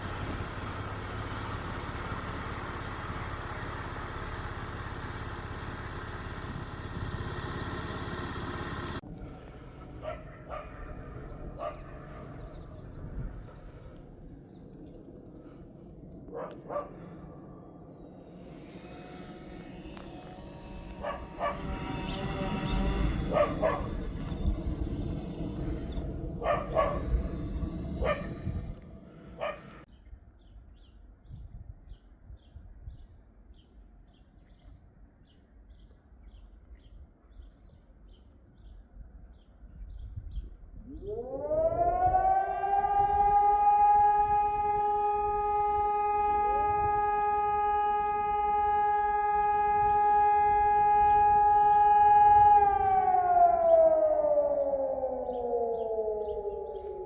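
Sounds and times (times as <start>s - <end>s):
distant civil defence siren: 0.0s - 29.9s, 40.8s - 57.0s
dog barking: 10.0s - 12.2s, 16.3s - 17.0s, 21.0s - 21.7s, 23.3s - 24.4s, 25.8s - 28.6s, 29.2s - 29.8s.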